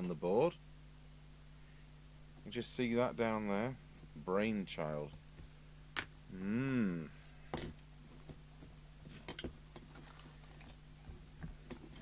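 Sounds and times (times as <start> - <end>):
steady low hum: 0.0 - 12.0
person humming: 6.3 - 7.4.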